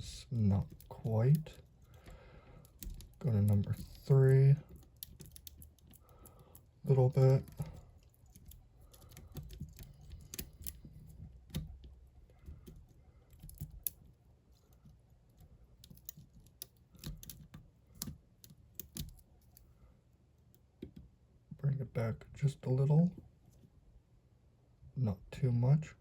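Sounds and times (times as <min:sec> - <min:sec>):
lock pick clicking in lock: 0:00.6 - 0:14.1, 0:15.4 - 0:19.2.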